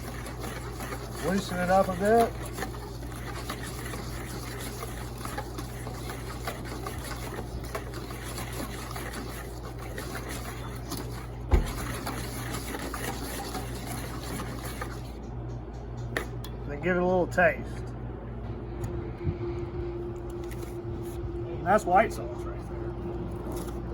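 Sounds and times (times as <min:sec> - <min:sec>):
whisk stirring sauce in bowl: 0:00.0 - 0:15.5
heavy thump: 0:11.5 - 0:11.8.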